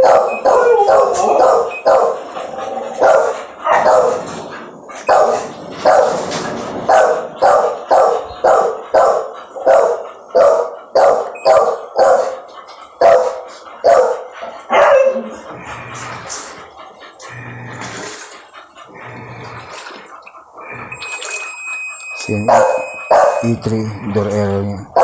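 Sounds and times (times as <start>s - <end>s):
dog barking: 0.0s - 12.4s, 13.0s - 15.5s, 22.2s - 25.0s.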